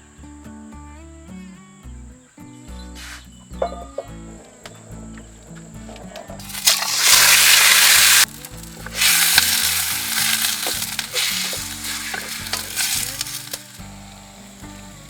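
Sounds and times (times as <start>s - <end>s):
food sizzling in oil: 6.4s - 14.8s.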